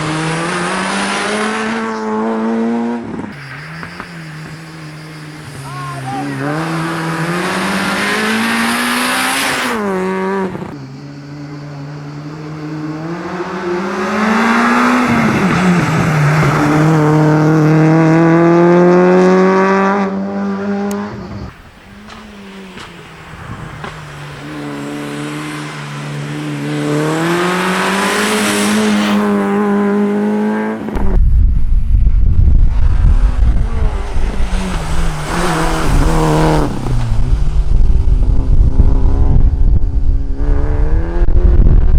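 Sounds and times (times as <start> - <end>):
race car engine accelerating: 0.0 - 31.2, 32.5 - 41.9
loud low rumble: 30.9 - 34.7.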